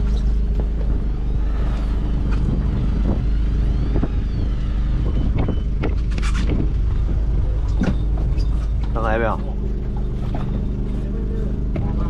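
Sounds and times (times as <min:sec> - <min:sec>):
boat engine humming: 0:00.0 - 0:12.0.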